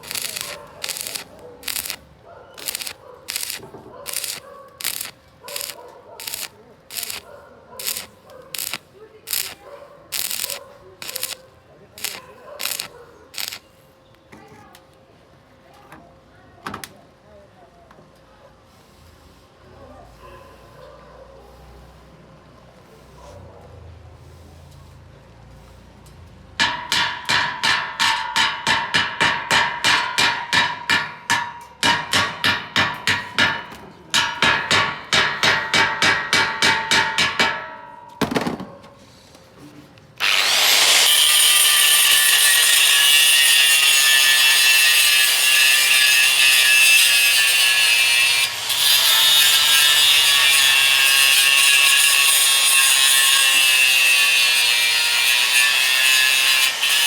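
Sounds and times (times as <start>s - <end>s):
hand tool strokes: 0.0s - 2.0s, 2.6s - 11.4s, 12.0s - 13.8s
power tool whining: 0.0s - 2.0s, 2.6s - 11.4s, 12.0s - 13.6s, 40.2s - 43.0s.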